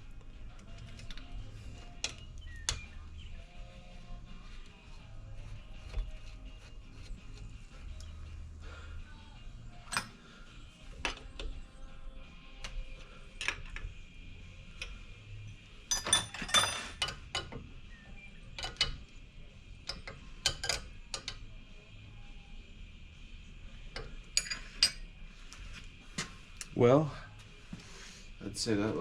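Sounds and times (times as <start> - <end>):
metal tools clinking: 9.8 - 10.2, 15.9 - 17.5, 24.4 - 25.0.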